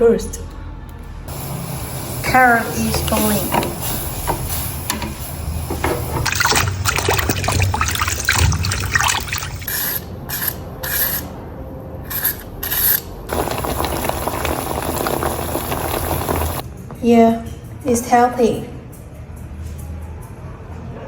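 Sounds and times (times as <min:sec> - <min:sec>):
water running and splashing: 0:01.3 - 0:09.7, 0:13.3 - 0:16.6.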